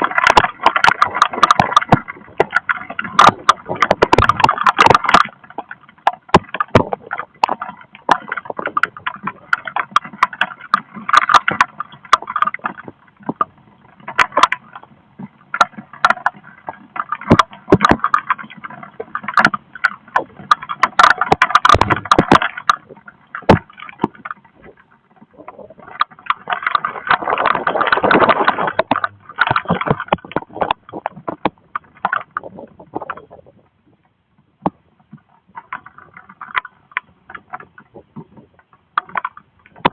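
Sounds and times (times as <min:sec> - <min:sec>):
gusting wind: 0:00.0 - 0:39.9
raindrops tapping close by: 0:00.0 - 0:39.9.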